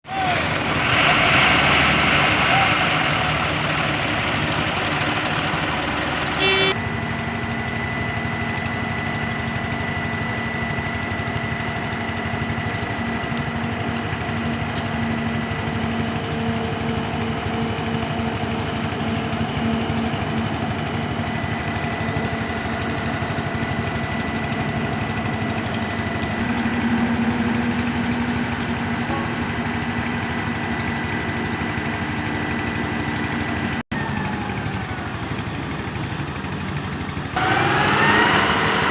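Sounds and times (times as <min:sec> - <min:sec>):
truck engine running: 0:00.1 - 0:38.9
steady high whine: 0:24.2 - 0:33.7.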